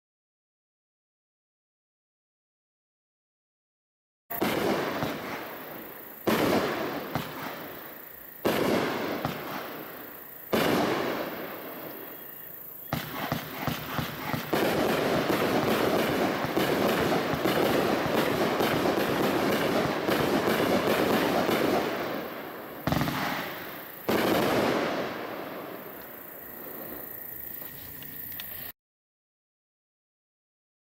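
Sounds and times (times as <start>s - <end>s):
fireworks crackle: 4.3s - 28.7s
fireworks shots: 4.3s - 28.7s.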